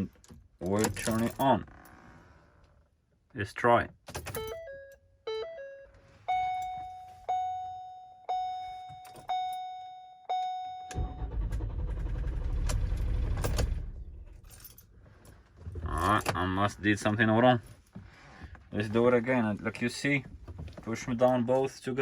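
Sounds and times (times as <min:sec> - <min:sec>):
dashboard chimes: 0:04.4 - 0:11.1
van engine starting: 0:10.9 - 0:14.5.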